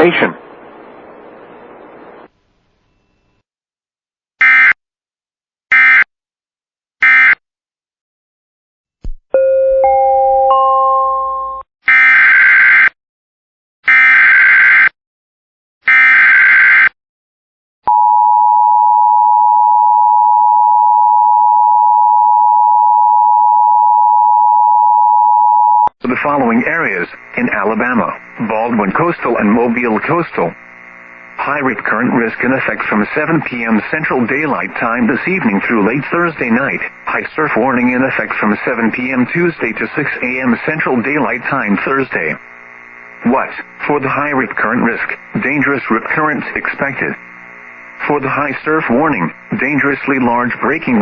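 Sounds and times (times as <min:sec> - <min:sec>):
digital data bursts: 0:43.0 - 0:51.0.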